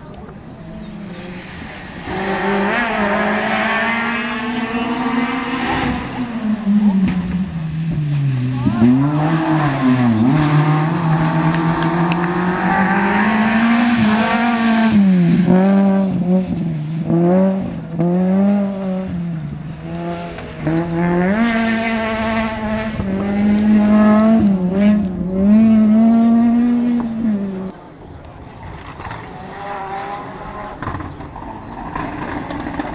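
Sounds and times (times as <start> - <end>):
rally car engine at high revs: 0.6 - 32.9.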